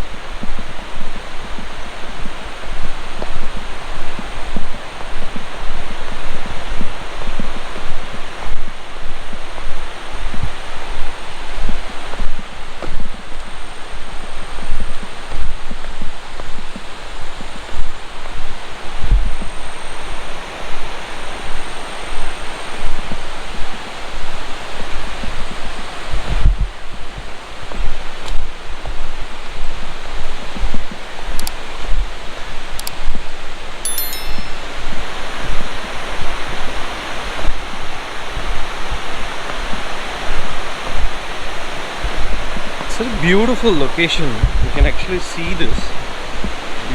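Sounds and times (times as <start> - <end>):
wind rumble on microphone: 0.0 - 33.8, 35.3 - 43.5, 44.2 - 45.1, 45.7 - 46.9
wind buffeting microphone: 23.6 - 32.2, 36.5 - 45.1
waterfall and river rushing: 36.0 - 46.9.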